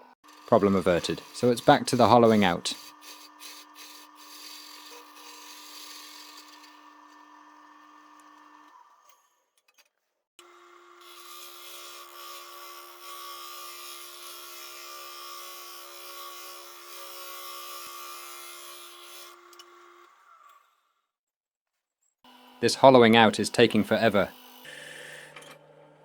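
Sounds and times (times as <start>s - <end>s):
wood lathe humming: 0.0s - 9.1s, 10.4s - 20.6s
gouge scraping wood: 0.2s - 6.9s.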